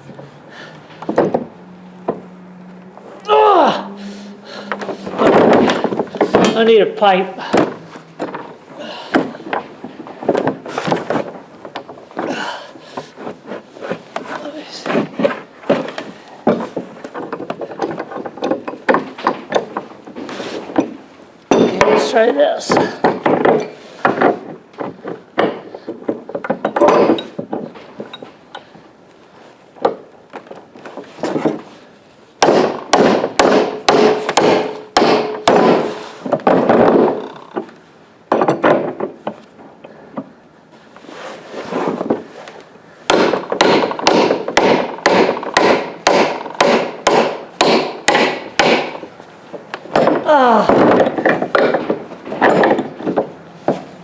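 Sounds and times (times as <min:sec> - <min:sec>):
hammer striking metal pipe: 0:32.4 - 0:36.0, 0:43.1 - 0:49.0.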